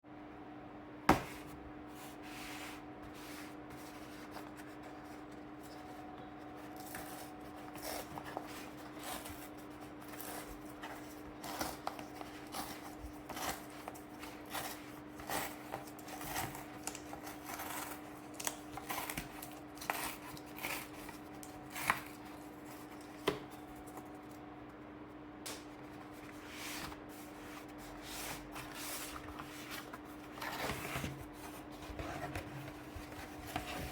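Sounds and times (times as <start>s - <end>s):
packaging rustling and scraping: 1.3s - 24.1s, 25.8s - 33.9s.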